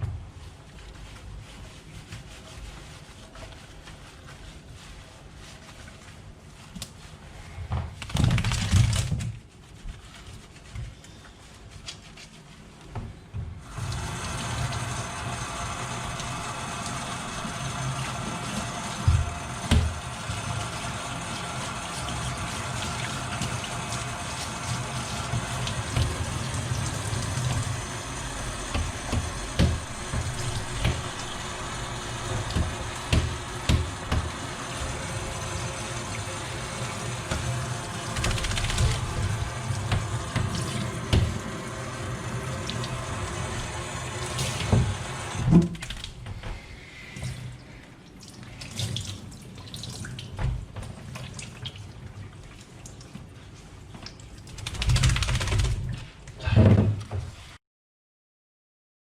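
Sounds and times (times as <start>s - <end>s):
water running from a tap: 13.6s - 46.0s.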